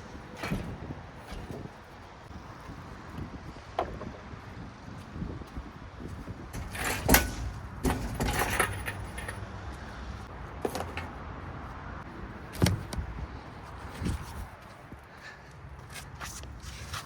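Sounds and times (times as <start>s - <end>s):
metal clanking and rattling: 0.0s - 1.8s, 6.5s - 9.6s, 10.6s - 11.2s
hoist chain jangling: 6.5s - 9.6s.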